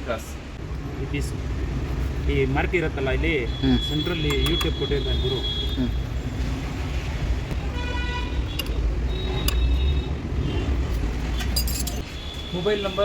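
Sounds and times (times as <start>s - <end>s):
road traffic engines rumbling: 0.0s - 13.0s
vehicle horn honking: 7.7s - 10.7s.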